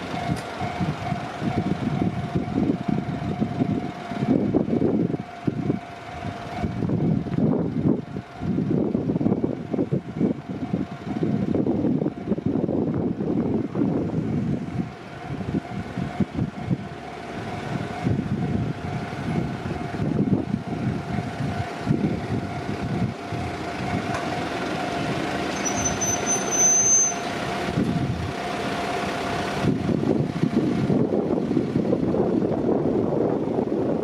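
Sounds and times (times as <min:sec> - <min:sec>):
crossing warning bell: 0:00.0 - 0:07.3, 0:14.2 - 0:29.6
train wheels rumbling and clattering: 0:00.0 - 0:34.0
brief high squeal: 0:25.5 - 0:27.4.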